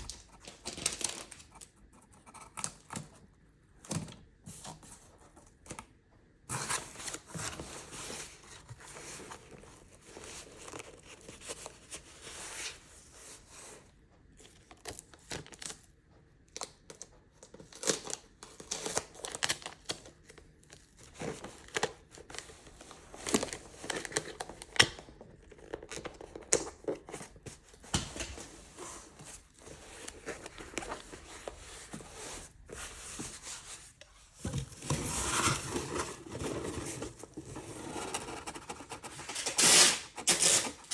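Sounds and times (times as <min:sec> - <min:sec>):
paper and plastic crinkling: 0:00.0 - 0:01.7, 0:16.6 - 0:38.3.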